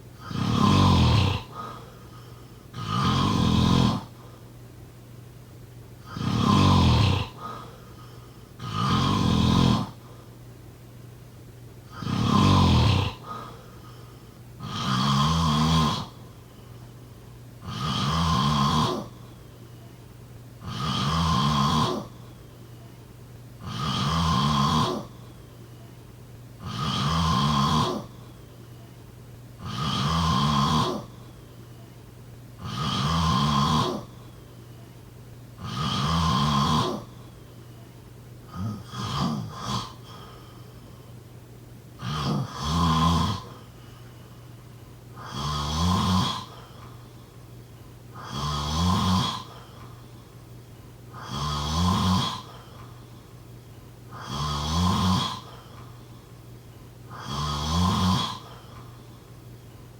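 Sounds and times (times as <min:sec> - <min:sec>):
person snoring: 0:00.2 - 0:04.2, 0:06.0 - 0:10.0, 0:11.9 - 0:16.7, 0:17.6 - 0:19.4, 0:20.6 - 0:22.4, 0:23.6 - 0:25.3, 0:26.6 - 0:28.3, 0:29.6 - 0:31.3, 0:32.6 - 0:34.4, 0:35.6 - 0:37.2, 0:38.5 - 0:40.9, 0:42.0 - 0:43.8, 0:45.2 - 0:46.9, 0:48.1 - 0:50.0, 0:51.1 - 0:53.2, 0:54.1 - 0:55.8, 0:57.1 - 0:59.3.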